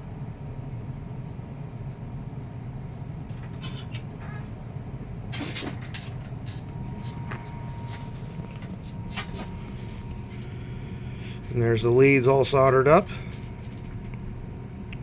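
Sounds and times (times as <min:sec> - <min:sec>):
steady low hum: 0:00.0 - 0:15.0
faint thin whine: 0:05.3 - 0:13.9.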